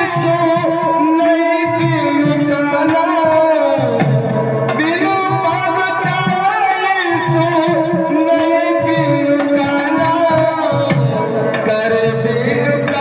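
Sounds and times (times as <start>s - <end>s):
person singing: 0.0s - 13.0s
sustained melody accompaniment: 0.0s - 13.0s
hand drum beat: 7.2s - 13.0s.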